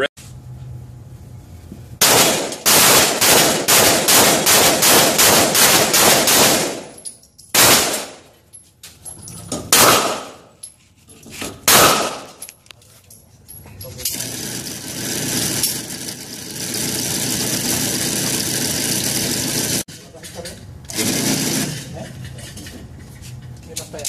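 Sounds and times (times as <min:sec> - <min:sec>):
gunshots: 0:02.0 - 0:07.0, 0:07.6 - 0:08.3, 0:09.7 - 0:10.5, 0:11.6 - 0:12.4.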